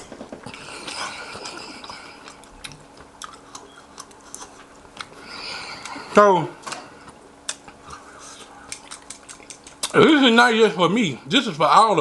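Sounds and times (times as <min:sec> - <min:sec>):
close chewing with wet mouth sounds: 0:00.4 - 0:06.1, 0:07.0 - 0:10.0.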